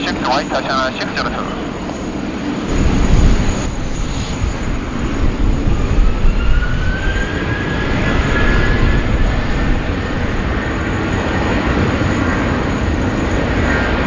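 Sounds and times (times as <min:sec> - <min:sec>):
jet engine whine rising: 0:00.0 - 0:14.0
jet engines deep rumble: 0:00.0 - 0:14.0.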